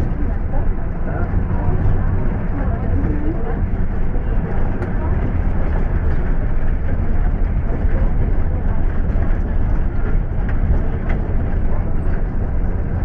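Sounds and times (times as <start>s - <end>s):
minibus engine and road rumble: 0.0s - 13.0s.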